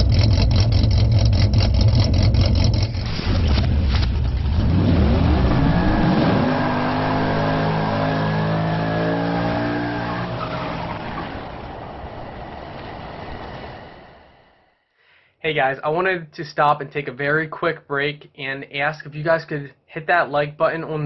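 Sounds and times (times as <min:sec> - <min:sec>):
car engine revving: 0:00.0 - 0:14.1.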